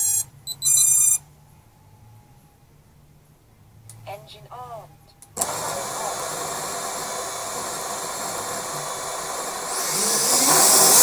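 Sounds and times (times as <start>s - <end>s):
quadcopter motors whirring: 5.4s - 11.0s.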